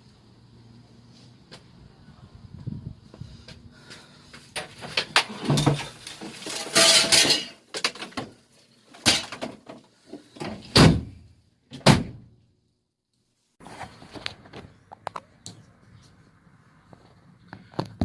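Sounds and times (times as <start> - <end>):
objects knocking and thudding: 4.5 - 11.2
scraping clatter: 4.6 - 8.2.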